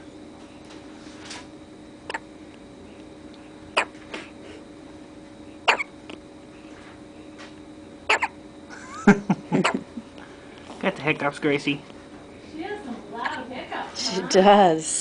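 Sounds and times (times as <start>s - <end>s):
baby hiccuping: 5.7s - 5.9s, 8.1s - 8.4s.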